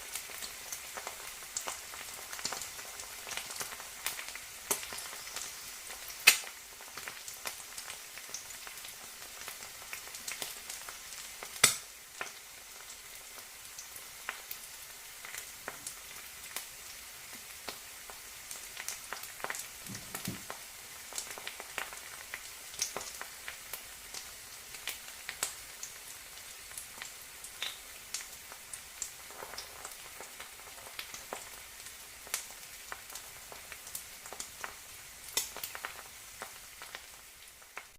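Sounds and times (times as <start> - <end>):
egg sizzling with pops: 0.0 - 37.9.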